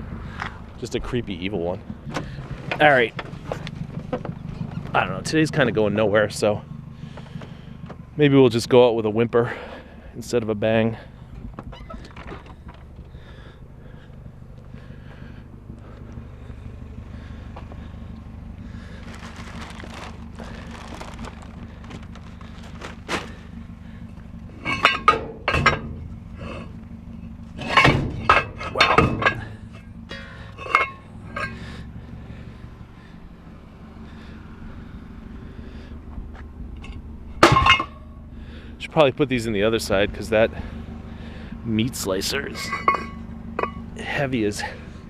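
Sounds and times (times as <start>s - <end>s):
steady low hum: 0.0s - 45.0s
heavy scrap metal clanking: 11.0s - 32.4s, 36.7s - 38.3s, 39.8s - 45.0s.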